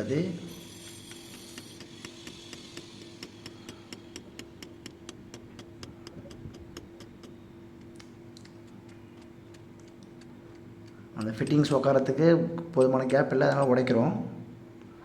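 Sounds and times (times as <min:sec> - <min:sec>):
faint steady hum: 0:00.0 - 0:15.0
light even tapping: 0:01.4 - 0:11.6.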